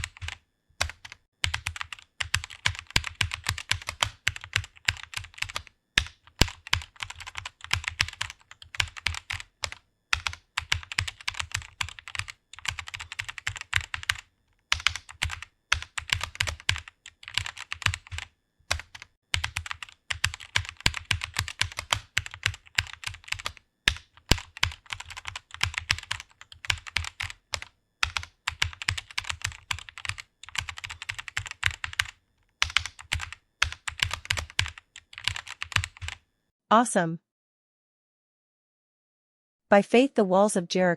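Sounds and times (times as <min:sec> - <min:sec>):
fast typing on keyboard: 0:00.0 - 0:36.2.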